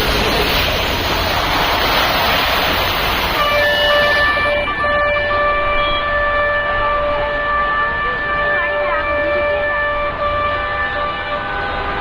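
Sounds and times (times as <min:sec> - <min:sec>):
street traffic rushing: 0:00.0 - 0:12.0
vehicle horn long held note: 0:03.4 - 0:12.0.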